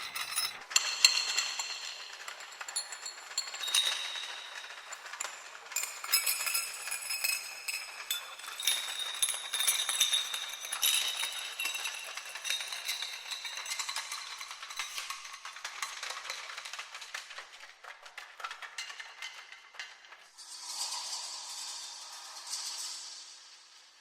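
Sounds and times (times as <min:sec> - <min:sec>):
metal chains rattling and clinking: 0:00.0 - 0:17.1.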